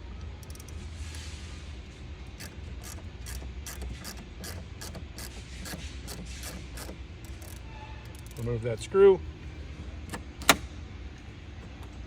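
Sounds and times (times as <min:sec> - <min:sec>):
steady low hum: 0:00.0 - 0:12.0
mechanical clicks of door latch: 0:10.0 - 0:10.7.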